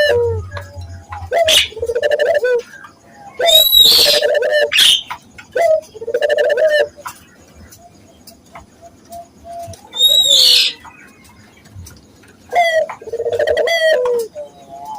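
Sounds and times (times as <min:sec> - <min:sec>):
dove cooing: 0:00.0 - 0:07.8, 0:09.2 - 0:10.8, 0:12.5 - 0:14.9
high bird chirps: 0:00.4 - 0:05.2, 0:08.9 - 0:10.9.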